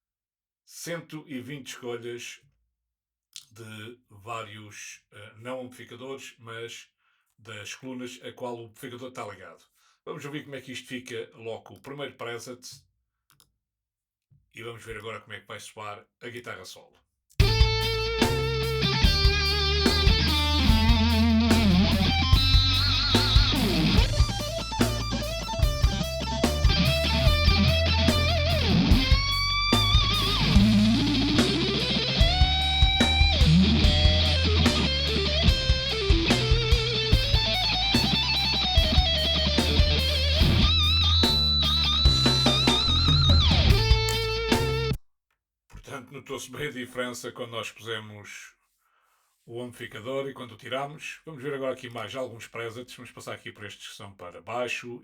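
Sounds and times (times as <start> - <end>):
electric guitar solo: 17.4 - 45.0
rock drums and bass: 17.4 - 45.0.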